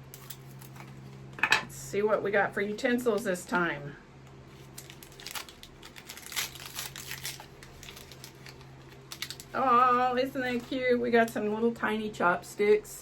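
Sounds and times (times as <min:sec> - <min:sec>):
plastic packet crinkling: 0:04.5 - 0:11.4.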